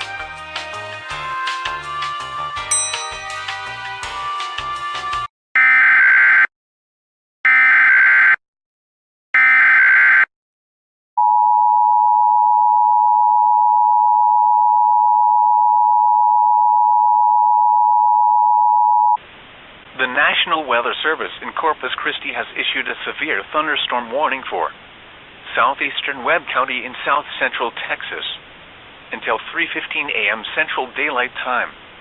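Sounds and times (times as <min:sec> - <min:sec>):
music: 0:00.0 - 0:05.3.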